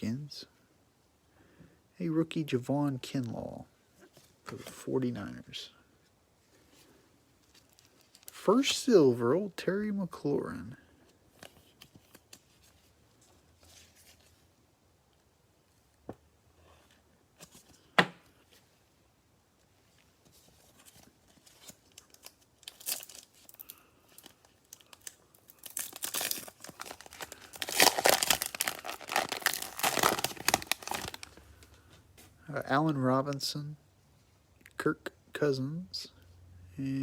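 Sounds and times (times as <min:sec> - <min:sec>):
cellophane wrapper crinkling: 0:07.4 - 0:08.4, 0:20.6 - 0:31.7.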